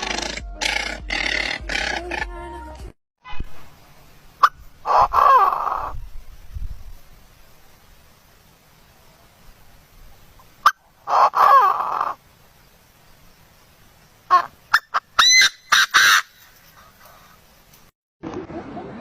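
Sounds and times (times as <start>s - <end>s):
bird calls: 4.4s - 6.0s, 14.0s - 17.8s.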